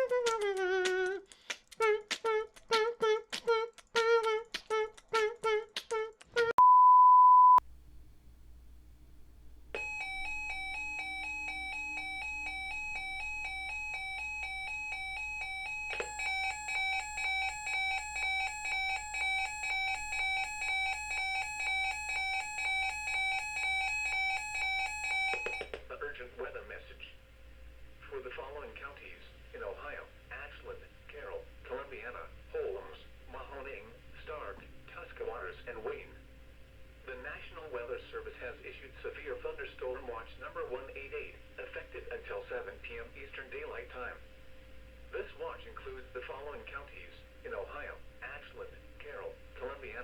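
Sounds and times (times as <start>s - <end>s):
loud steady beep: 6.6s - 7.6s, 9.8s - 25.7s
pulsing alarm: 9.8s - 25.8s
steady electronic multi-tone alarm: 9.8s - 25.8s.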